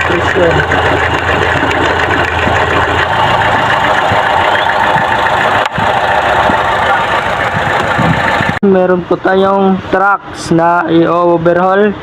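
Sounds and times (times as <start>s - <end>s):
car engine idling unevenly: 0.0s - 9.7s.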